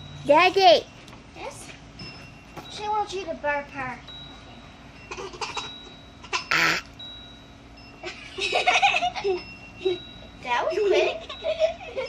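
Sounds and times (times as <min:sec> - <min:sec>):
short burp: 0:06.4 - 0:06.9
laughter and giggling: 0:08.0 - 0:10.0, 0:10.8 - 0:12.0.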